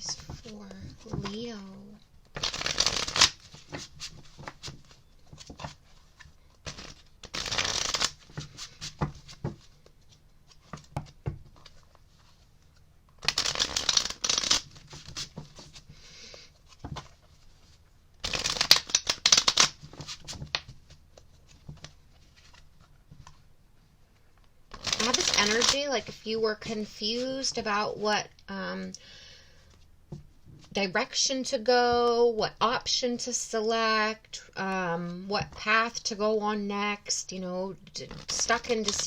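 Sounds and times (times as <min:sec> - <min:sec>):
cards shuffled by hand: 0:02.3 - 0:15.9, 0:16.6 - 0:23.4, 0:24.7 - 0:26.2, 0:38.1 - 0:39.0.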